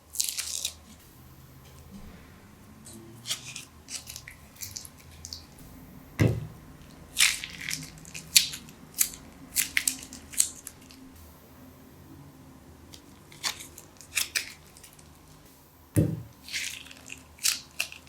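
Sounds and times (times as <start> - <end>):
slime squelch: 0.0 - 11.2, 12.9 - 15.4
slime crackling and snapping: 0.2 - 1.0, 6.3 - 11.1, 12.9 - 15.4, 16.4 - 18.0.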